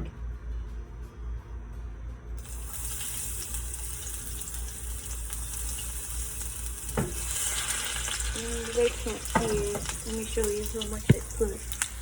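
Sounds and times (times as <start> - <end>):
garlic sizzling in hot oil: 2.4 - 12.0.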